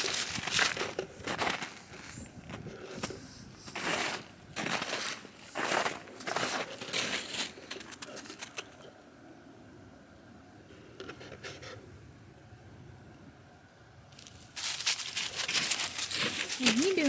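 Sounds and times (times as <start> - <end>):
footsteps crunching through snow: 0.0 - 8.6, 14.2 - 17.0.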